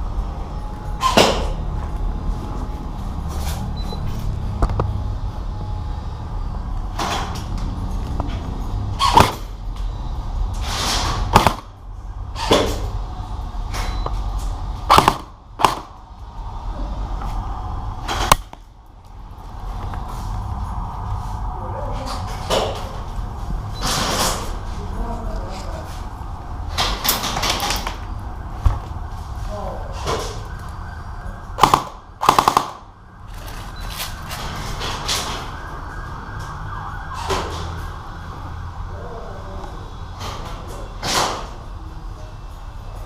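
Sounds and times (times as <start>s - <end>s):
low steady rumble: 0.0s - 23.8s
airsoft gun shots: 9.0s - 9.5s, 11.3s - 11.7s, 14.9s - 16.0s, 31.6s - 32.9s.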